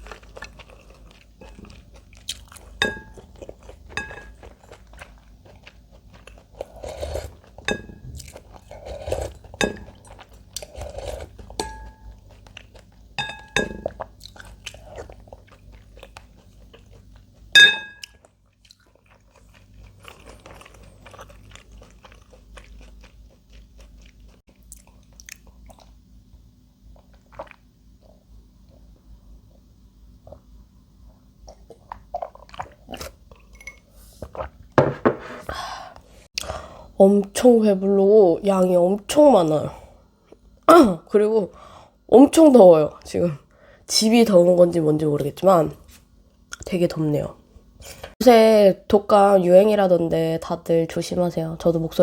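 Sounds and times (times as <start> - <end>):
close chewing and crunching food: 0.0 - 34.8
utensils clinking against dishes: 17.6 - 18.1.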